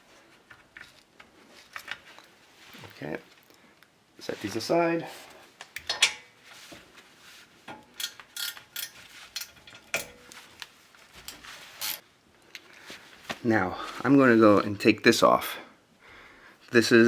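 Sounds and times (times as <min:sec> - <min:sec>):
metal tools clinking: 0:05.8 - 0:06.4, 0:07.7 - 0:12.0.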